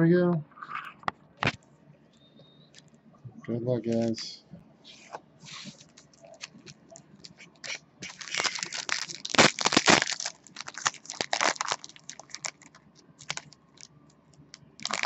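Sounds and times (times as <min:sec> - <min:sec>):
foil wrapper crinkling and tearing: 0:05.7 - 0:13.9, 0:14.8 - 0:15.0.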